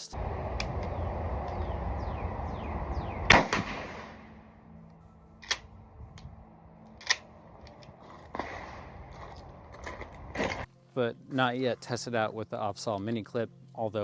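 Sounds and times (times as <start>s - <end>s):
shotgun cracks: 3.3s - 4.4s.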